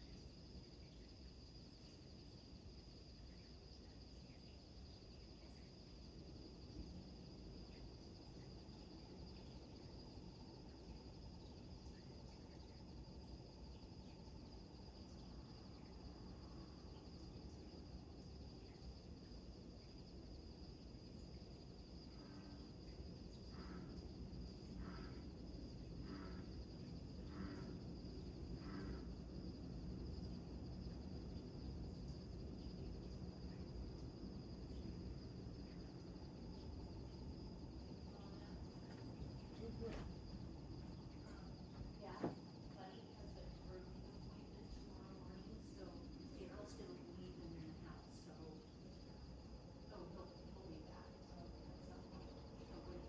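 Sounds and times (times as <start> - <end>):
crickets trilling: 0.0 - 53.0
bullfrog croaking: 23.5 - 25.4, 26.0 - 29.1.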